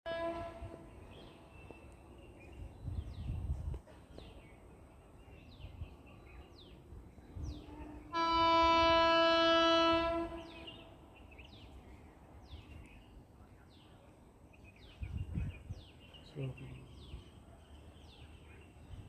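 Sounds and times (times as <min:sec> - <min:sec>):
train horn: 0:00.1 - 0:01.4, 0:07.6 - 0:11.0
birds chirping: 0:04.1 - 0:19.0.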